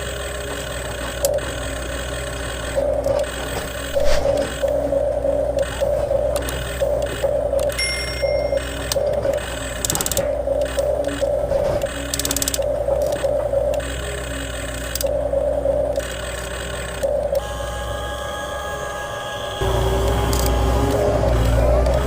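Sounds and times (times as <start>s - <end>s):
electric gear motors whining: 0.0s - 22.0s
clicks: 0.4s - 17.5s, 20.0s - 22.0s.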